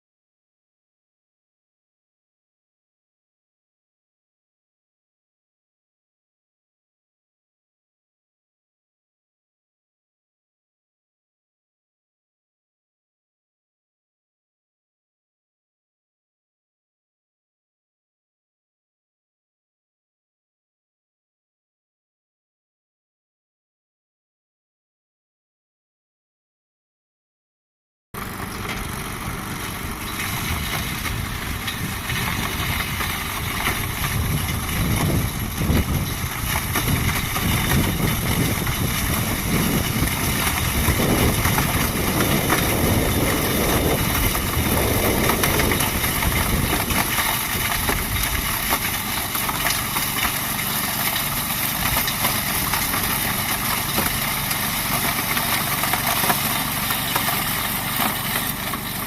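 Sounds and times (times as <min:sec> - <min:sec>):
snowblower engine running: 0:28.2 - 0:59.0.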